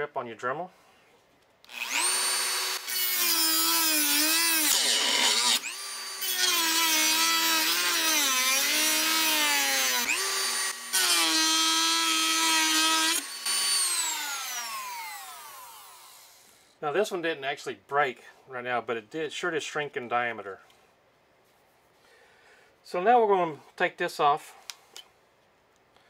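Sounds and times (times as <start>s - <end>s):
rotary tool cutting metal: 1.7s - 16.5s.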